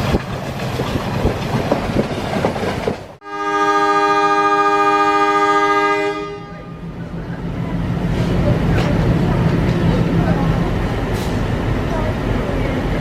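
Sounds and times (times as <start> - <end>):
locomotive horn blast: 3.2 - 6.9
diesel locomotive rumble: 4.7 - 13.0.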